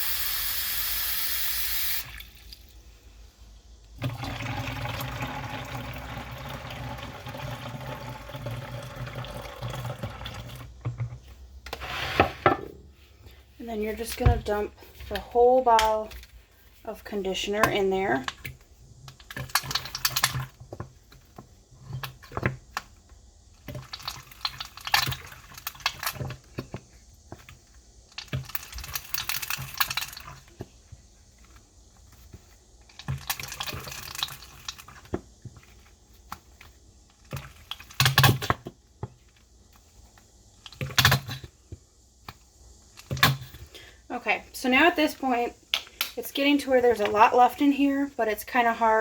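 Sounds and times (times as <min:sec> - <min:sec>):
conditioner glugging from bottle: 0:01.8 - 0:02.8, 0:04.0 - 0:11.0.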